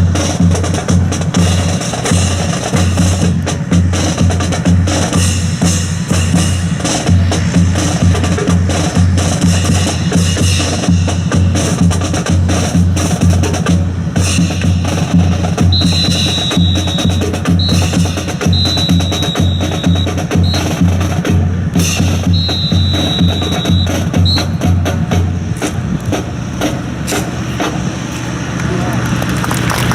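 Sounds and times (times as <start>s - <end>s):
bass drum steady beat: 0.0s - 28.0s
whistle blasts: 15.5s - 21.0s, 21.8s - 24.9s.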